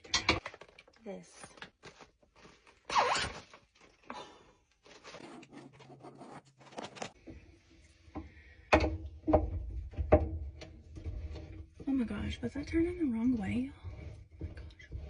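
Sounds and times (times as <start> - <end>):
knocks and bumps: 8.2 - 15.0.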